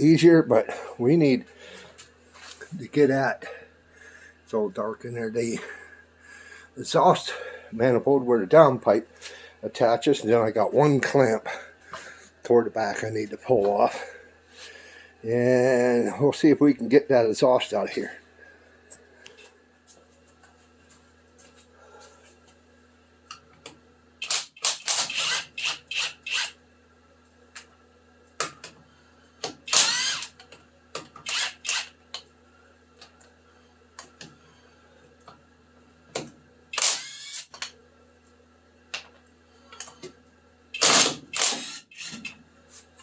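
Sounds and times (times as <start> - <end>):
tool whirring rising in pitch: 24.2 - 26.6, 29.7 - 30.4, 31.2 - 32.0, 36.8 - 37.5, 40.8 - 42.3.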